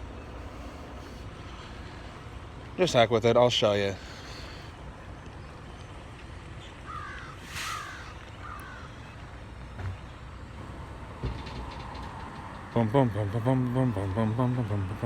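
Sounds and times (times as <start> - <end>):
low background hum: 0.0 - 15.0
bird calling: 6.6 - 10.2.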